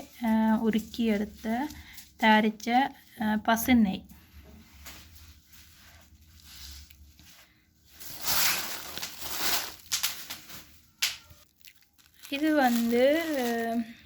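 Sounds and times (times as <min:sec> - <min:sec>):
plastic packaging crinkling: 0:05.0 - 0:14.0.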